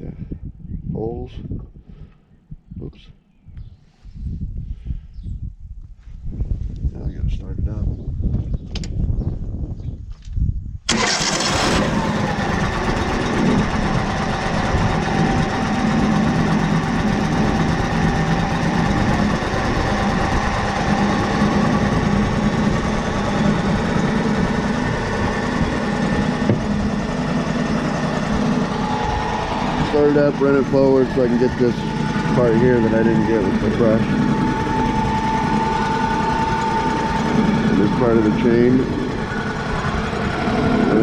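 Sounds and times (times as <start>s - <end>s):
engine cranking and starting: 10.9s - 41.0s.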